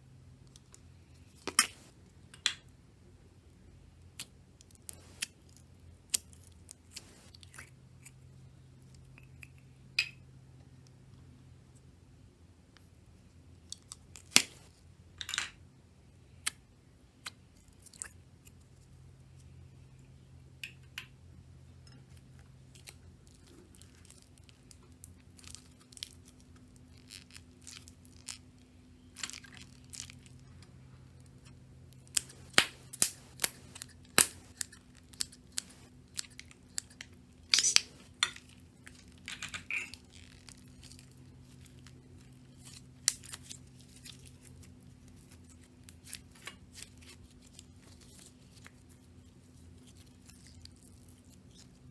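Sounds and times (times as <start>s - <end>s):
faint steady hum: 0.0s - 51.9s
slime crackling and popping: 29.0s - 30.5s, 32.0s - 49.0s.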